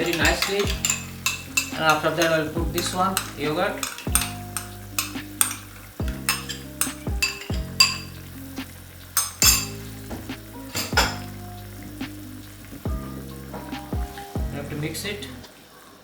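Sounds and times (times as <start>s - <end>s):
metal spoon scraping a pot: 0.0s - 9.9s, 10.7s - 11.3s.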